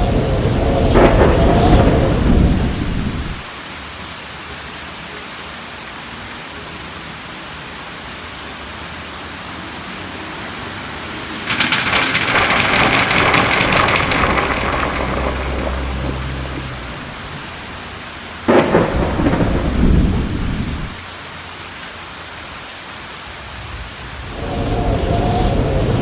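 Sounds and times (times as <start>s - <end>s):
thunder rumbling: 0.0s - 3.5s, 11.2s - 21.0s, 23.4s - 26.0s
heavier rain hiss: 0.0s - 4.5s, 11.0s - 26.0s
steady rain hiss: 0.0s - 26.0s.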